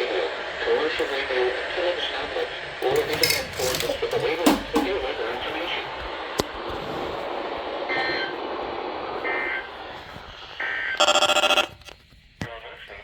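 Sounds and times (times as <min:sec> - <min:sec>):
radio hiss: 0:00.0 - 0:13.0
rapid electronic beeping: 0:11.0 - 0:11.7
two-tone data warbles: 0:11.0 - 0:11.7.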